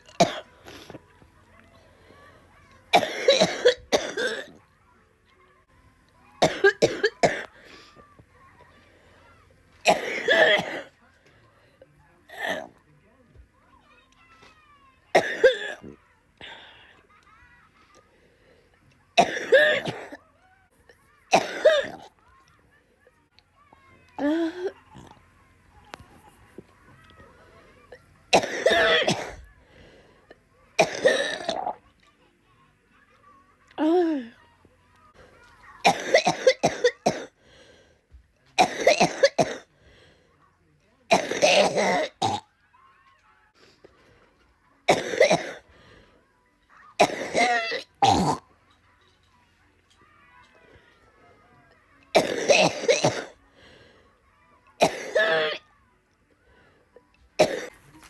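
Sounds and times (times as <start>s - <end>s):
harsh coughing: 0.1s - 1.0s, 2.9s - 4.6s, 6.4s - 7.8s, 9.8s - 10.9s, 15.1s - 16.6s, 19.2s - 20.2s, 21.3s - 22.1s, 28.3s - 29.5s, 30.8s - 31.8s, 35.8s - 37.6s, 38.6s - 39.7s, 41.1s - 42.5s, 44.9s - 45.7s, 47.0s - 48.4s, 52.1s - 53.4s, 54.8s - 55.6s, 57.4s - 57.8s.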